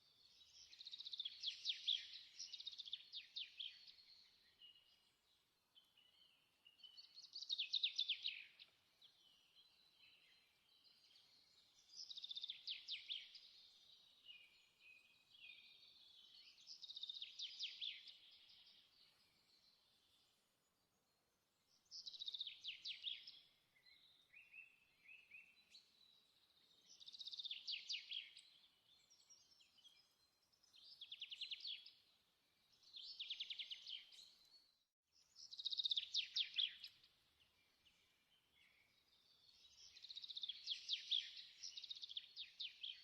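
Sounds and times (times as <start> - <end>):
songbird singing trilled phrases: 6.0 - 18.8, 35.3 - 37.1, 38.0 - 43.0.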